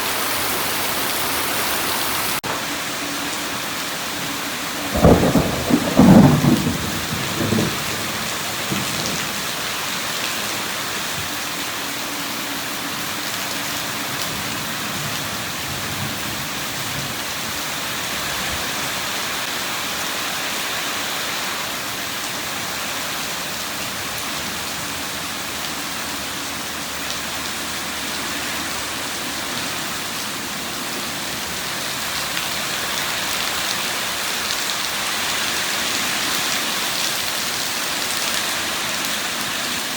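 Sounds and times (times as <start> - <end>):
heavy rainfall: 0.0 - 39.9
thunder clap rumbling: 4.9 - 9.6.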